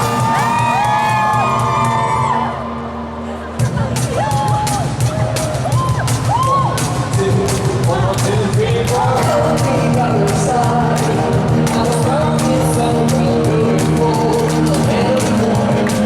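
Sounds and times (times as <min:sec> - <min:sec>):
drum hits: 0:03.6 - 0:16.0
lead vocal singing: 0:06.3 - 0:16.0.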